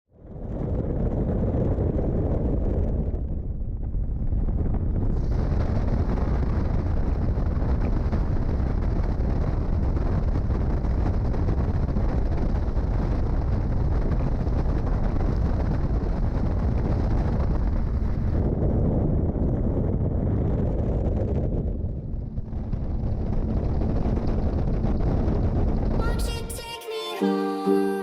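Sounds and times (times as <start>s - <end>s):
wind buffeting microphone: 0.2s - 26.6s.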